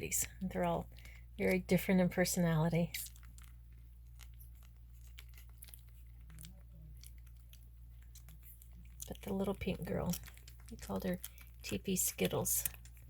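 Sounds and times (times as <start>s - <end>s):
puppies suckling: 3.0s - 13.0s.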